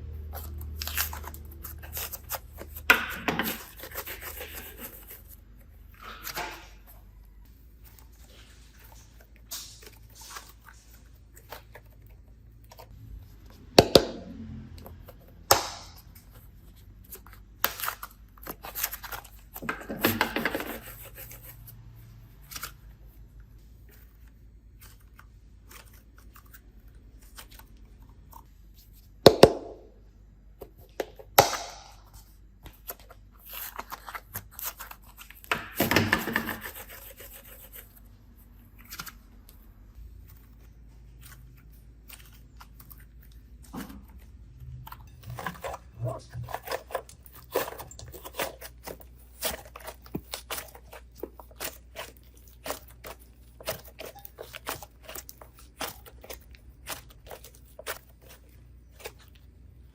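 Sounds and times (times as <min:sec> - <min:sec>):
rustling and scraping: 0:00.0 - 0:13.8, 0:32.1 - 0:59.9.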